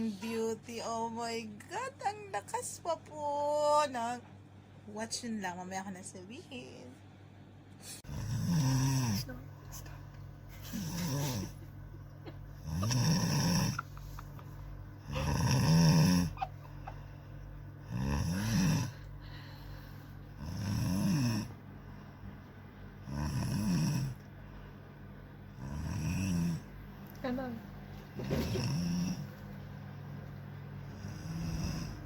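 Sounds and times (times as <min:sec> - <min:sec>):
person snoring loudly: 0:08.0 - 0:09.4, 0:10.6 - 0:11.6, 0:12.6 - 0:14.1, 0:15.0 - 0:16.5, 0:17.8 - 0:19.1, 0:20.3 - 0:21.6, 0:23.0 - 0:24.2, 0:25.5 - 0:26.7, 0:28.2 - 0:29.3, 0:30.8 - 0:32.0.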